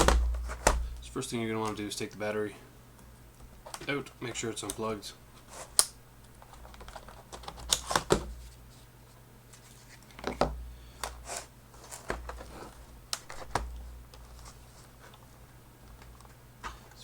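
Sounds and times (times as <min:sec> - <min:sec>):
laptop plastic clicks and knocks: 0:00.0 - 0:01.0, 0:06.5 - 0:08.3.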